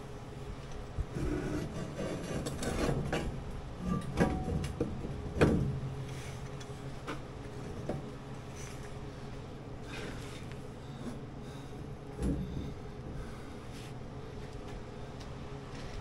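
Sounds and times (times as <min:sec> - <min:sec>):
steady low hum: 0:00.0 - 0:16.0
metal clanking and knocking: 0:02.7 - 0:06.0.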